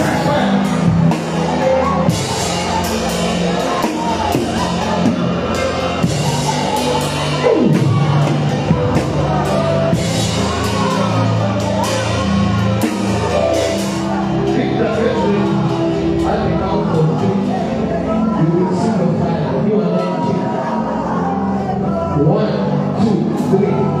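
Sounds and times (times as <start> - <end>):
drum kit: 0.0 - 17.6
held bass notes: 0.0 - 24.0
person singing: 0.0 - 24.0.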